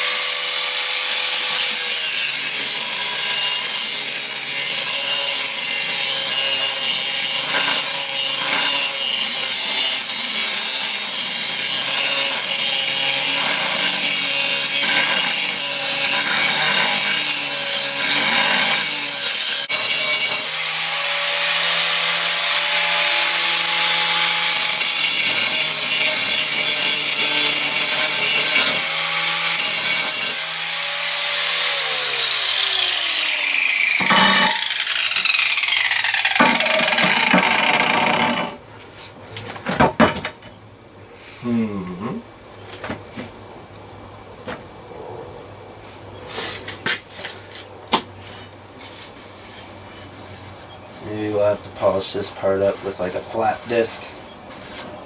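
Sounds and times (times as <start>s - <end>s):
electric grinder grinding steel: 0.0s - 38.6s.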